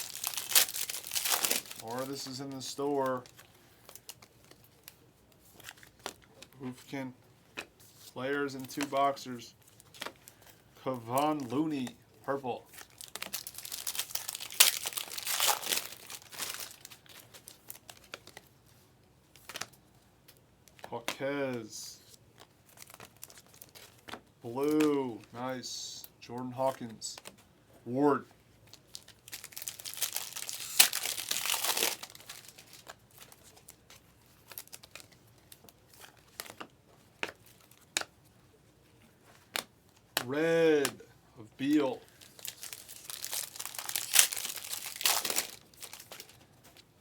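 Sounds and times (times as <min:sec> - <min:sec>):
wrapper crinkling and tearing: 0:00.0 - 0:06.5, 0:08.5 - 0:18.5, 0:22.3 - 0:24.9, 0:28.7 - 0:36.6, 0:41.6 - 0:46.9
cards clicking: 0:08.6 - 0:09.0
cards clicking and snapping: 0:08.6 - 0:09.0, 0:19.4 - 0:21.2, 0:34.7 - 0:38.2, 0:42.3 - 0:46.8.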